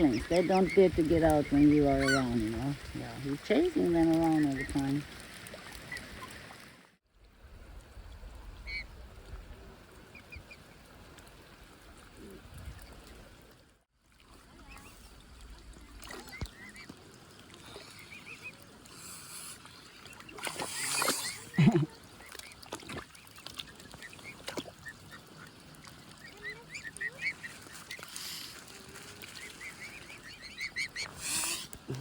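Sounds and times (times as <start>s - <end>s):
swan cygnets peeping: 0.0s - 2.7s, 22.0s - 31.7s.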